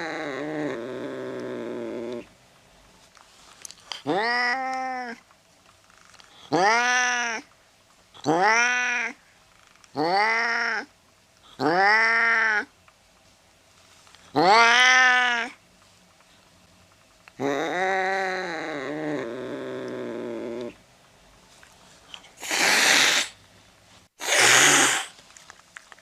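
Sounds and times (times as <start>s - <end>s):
cat meowing: 6.5s - 7.5s, 8.3s - 9.2s, 11.6s - 12.7s, 14.4s - 15.6s
cat hissing: 22.3s - 23.4s, 24.2s - 25.2s.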